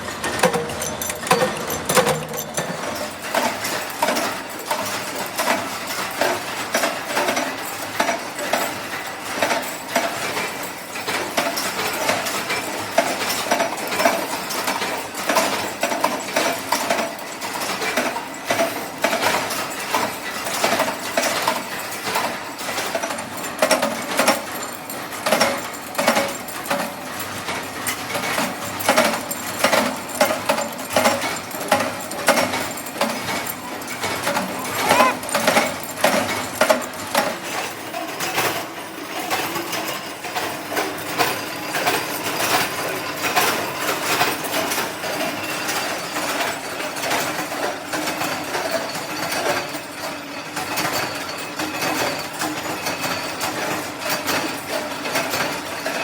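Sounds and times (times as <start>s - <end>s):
metallic clicking and clinking: 0.0s - 5.5s.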